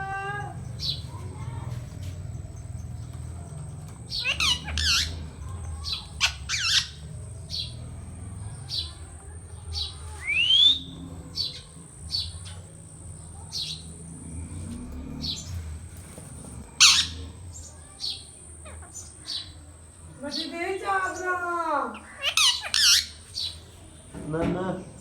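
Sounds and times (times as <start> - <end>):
parakeet chirping: 3.6 - 12.6, 16.8 - 19.6, 22.0 - 23.6
parakeet rising whistle: 10.2 - 10.9.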